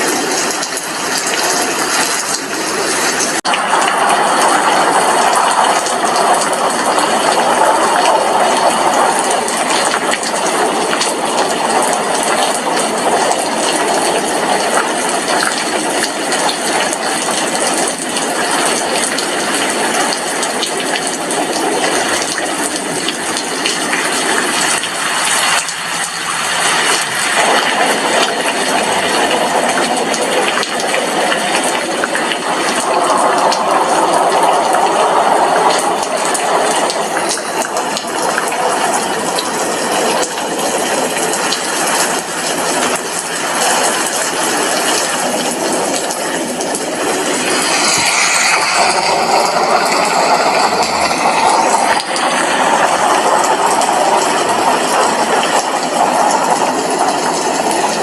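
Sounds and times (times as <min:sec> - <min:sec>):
heavy rain on glass window: 0:00.0 - 0:58.0.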